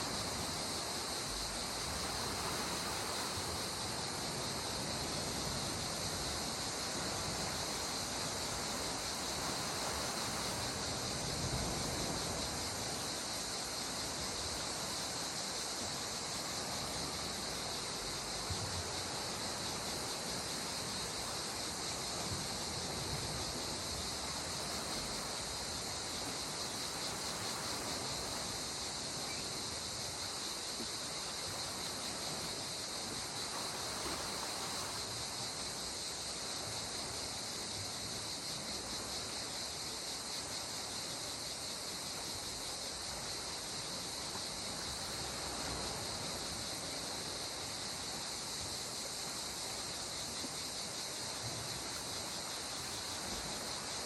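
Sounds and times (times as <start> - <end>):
calm sea water washing: 0.0 - 39.2
high insect chorus: 0.0 - 54.0.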